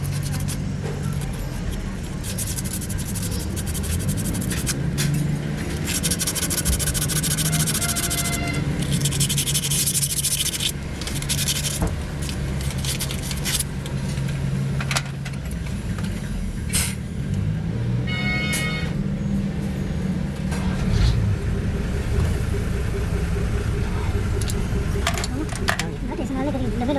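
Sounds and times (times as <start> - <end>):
rasping scraping noise: 0.0 - 13.7
low engine hum: 0.0 - 26.9
high squeal: 6.6 - 9.3.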